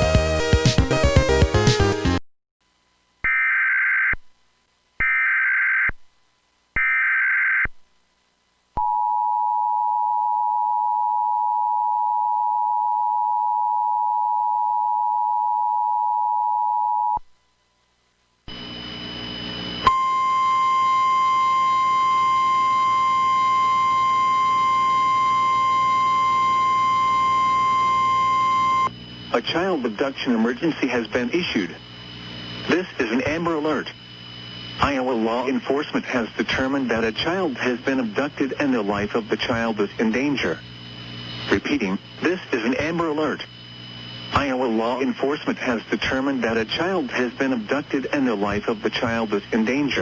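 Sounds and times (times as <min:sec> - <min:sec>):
background hum: 0:02.7 - 0:50.0
dual-tone attention signal: 0:19.9 - 0:28.9
screeching data header bursts: 0:20.0 - 0:34.0, 0:34.8 - 0:50.0.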